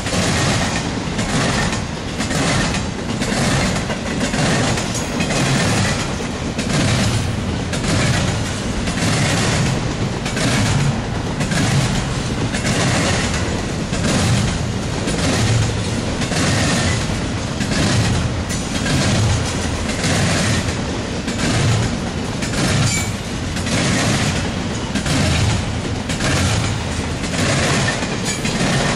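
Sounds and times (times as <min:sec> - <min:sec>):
freight train rumble: 0:00.0 - 0:28.9
wheels clicking over rail joints: 0:00.0 - 0:28.9.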